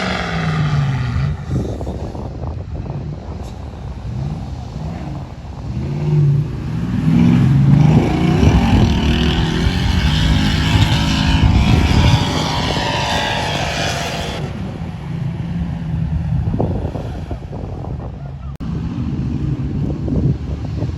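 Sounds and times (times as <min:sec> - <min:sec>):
loud rushing noise: 0:00.0 - 0:17.8
car engine revving: 0:00.0 - 0:18.2.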